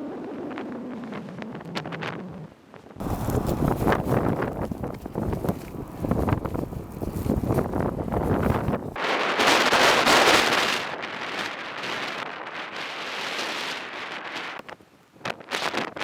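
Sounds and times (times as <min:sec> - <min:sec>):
sharp wind gusts: 0:00.0 - 0:16.0
wind buffeting microphone: 0:00.0 - 0:16.0
hiss of wind-driven snow: 0:03.0 - 0:14.7.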